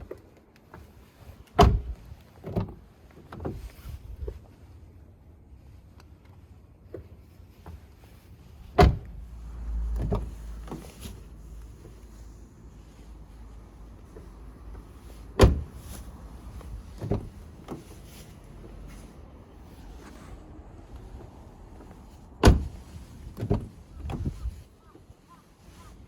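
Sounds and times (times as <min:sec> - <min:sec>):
car door clunks: 0:01.6 - 0:02.8, 0:08.8 - 0:09.1, 0:15.4 - 0:15.8, 0:17.0 - 0:17.8, 0:22.4 - 0:22.8, 0:23.4 - 0:24.3.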